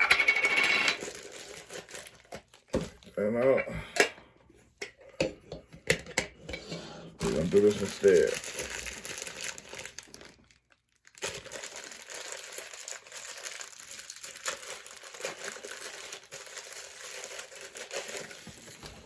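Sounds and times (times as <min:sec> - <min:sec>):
packaging crinkling: 0:00.9 - 0:03.2, 0:07.2 - 0:19.0.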